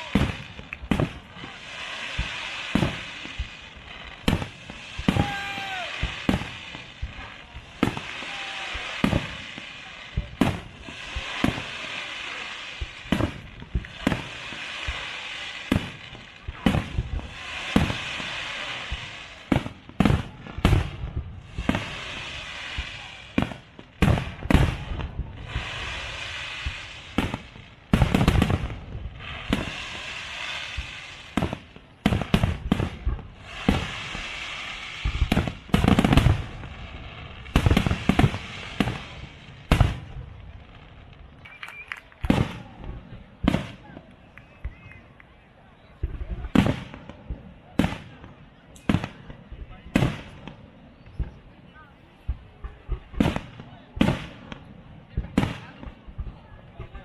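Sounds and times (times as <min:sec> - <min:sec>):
firework whistling: 0:00.0 - 0:40.3, 0:41.3 - 0:42.8, 0:43.5 - 0:45.2
fireworks bursting with bangs: 0:00.0 - 0:57.0
fireworks crackling: 0:00.0 - 0:57.0.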